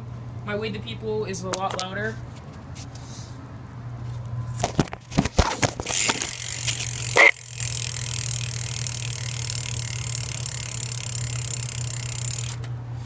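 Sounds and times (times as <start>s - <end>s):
bike hub ratchet clicking: 5.9s - 12.7s.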